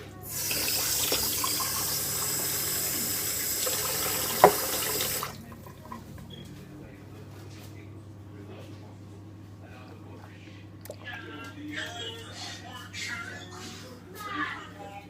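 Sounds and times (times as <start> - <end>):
tap running into a sink: 0.4 - 5.9.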